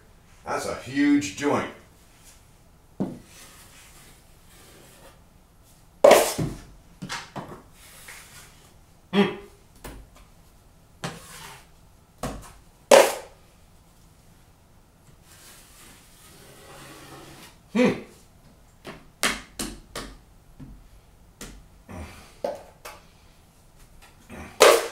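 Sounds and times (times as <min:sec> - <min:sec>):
taping knife scraping compound: 0:11.0 - 0:11.7, 0:15.3 - 0:17.6.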